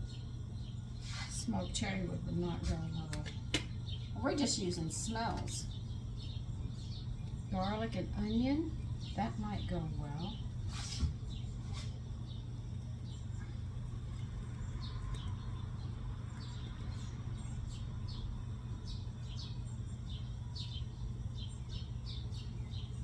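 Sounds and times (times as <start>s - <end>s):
bird chirping: 0.0s - 23.0s
steady low hum: 0.0s - 23.0s.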